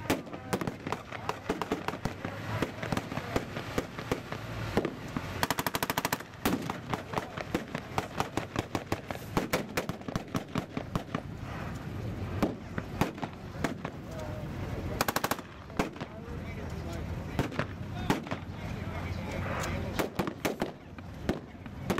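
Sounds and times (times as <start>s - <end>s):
rifle shots: 0.0s - 11.3s, 15.0s - 16.1s
machine-gun burst: 4.8s - 11.1s, 15.0s - 15.4s.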